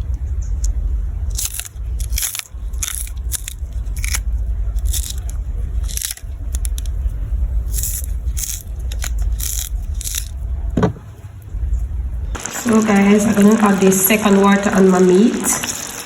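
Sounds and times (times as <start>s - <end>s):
steady low rumble: 0.0s - 15.0s
knife peeling vegetables: 1.3s - 7.0s, 7.6s - 11.0s.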